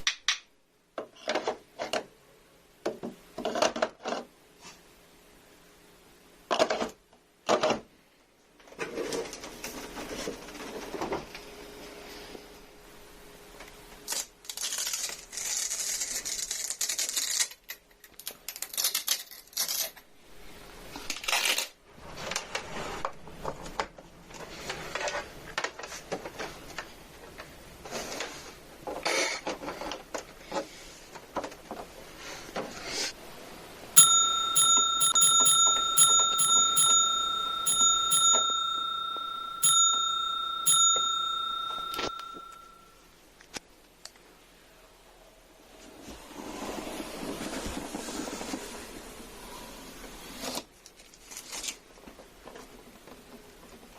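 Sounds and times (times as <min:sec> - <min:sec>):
high bell-like ringing tone: 0:34.0 - 0:42.9.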